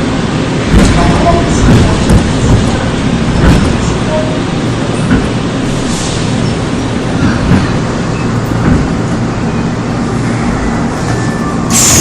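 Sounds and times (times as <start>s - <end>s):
train wheels rumbling on track: 0.0s - 12.0s
rail joint knocks: 0.7s - 4.1s, 5.1s - 5.4s
loud hiss with high tone: 11.7s - 12.0s.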